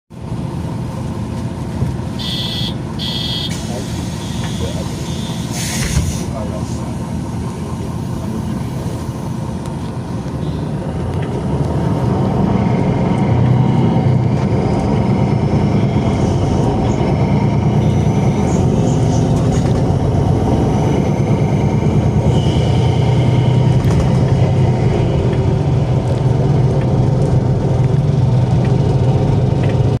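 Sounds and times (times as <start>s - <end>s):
bus diesel engine running: 0.1s - 30.0s
turbo whistle: 2.2s - 3.6s.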